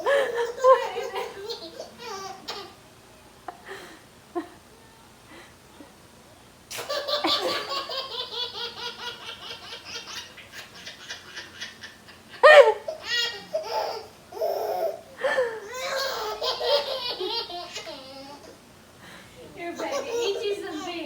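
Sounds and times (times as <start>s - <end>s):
baby laughing hysterically: 0.1s - 2.7s, 6.8s - 15.0s, 15.7s - 18.5s, 19.8s - 20.9s.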